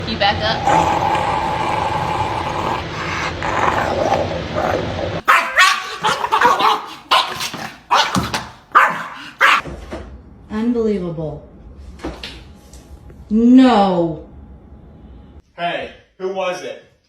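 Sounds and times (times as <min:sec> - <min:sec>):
dog barking and yipping: 0:02.9 - 0:09.6.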